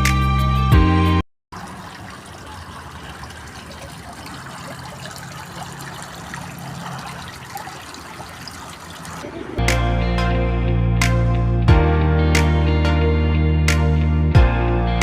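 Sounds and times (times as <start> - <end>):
water trickling and splashing: 1.5 - 9.6.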